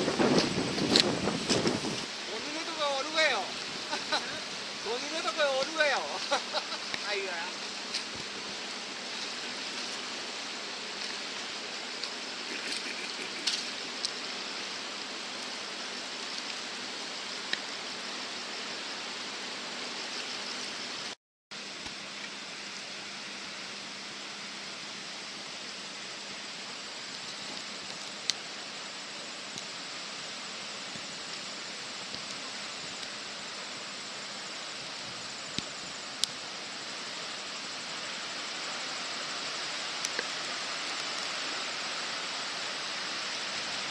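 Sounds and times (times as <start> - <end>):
river rushing in flood: 1.6 - 18.4.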